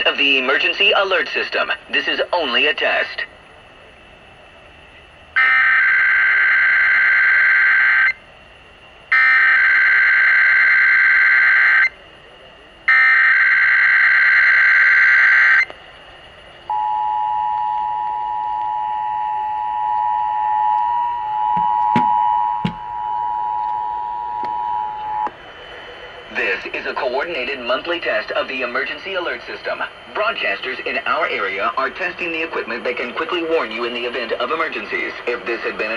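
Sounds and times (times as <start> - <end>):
steady two-tone attention signal: 16.7 - 25.3.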